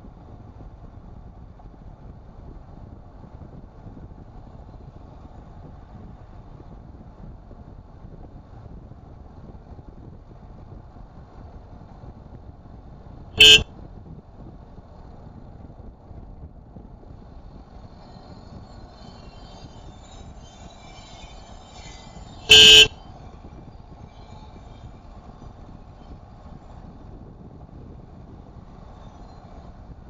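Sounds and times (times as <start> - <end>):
road noise rumble: 0.0 - 30.0
car horn toots: 13.4 - 13.6, 22.4 - 23.0.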